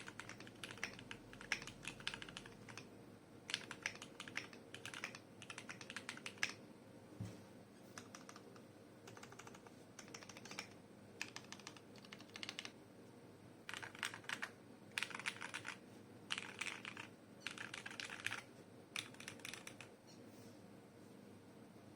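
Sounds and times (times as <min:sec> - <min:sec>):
mechanical keyboard typing: 0:00.0 - 0:02.9, 0:03.5 - 0:06.6, 0:07.9 - 0:12.8, 0:13.6 - 0:20.0.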